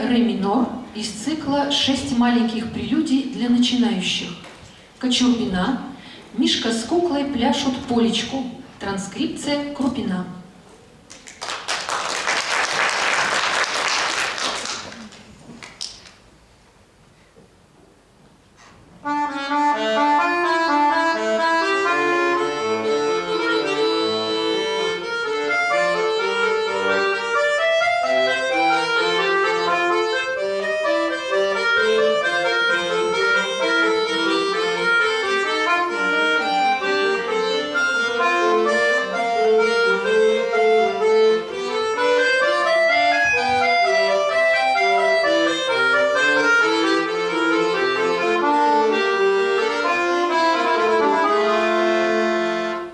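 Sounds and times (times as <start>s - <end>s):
accordion playing a polka: 0.0s - 4.2s, 19.0s - 52.9s.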